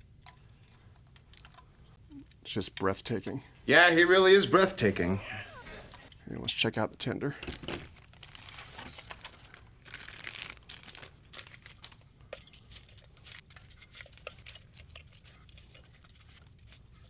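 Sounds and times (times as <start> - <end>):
packaging rustling and crinkling: 7.4 - 17.0.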